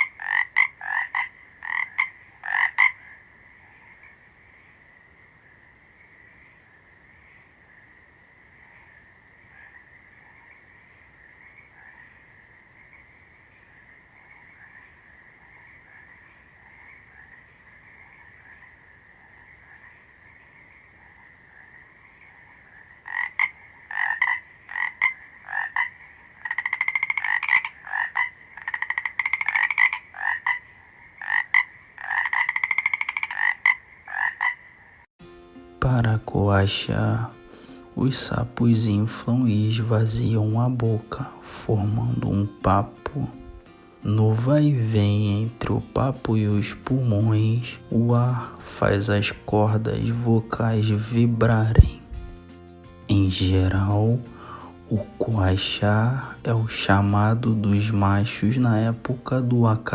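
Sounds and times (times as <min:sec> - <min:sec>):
faint chorus of frogs croaking: 0:00.0 - 0:35.1, 0:35.8 - 0:52.5, 0:53.1 - 0:59.9
nearby frogs calling loudly: 0:00.0 - 0:35.1.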